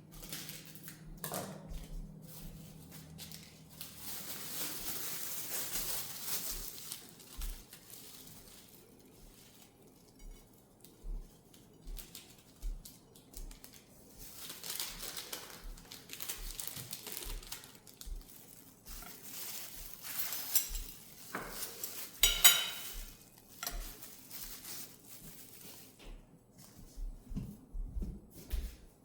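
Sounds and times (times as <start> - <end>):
dishes and utensils clinking: 20.0 - 24.1.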